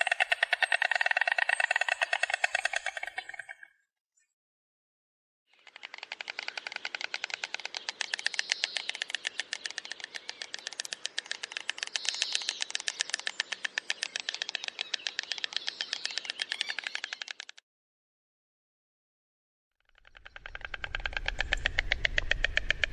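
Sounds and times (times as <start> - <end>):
stork clattering its bill: 5.6 - 17.6.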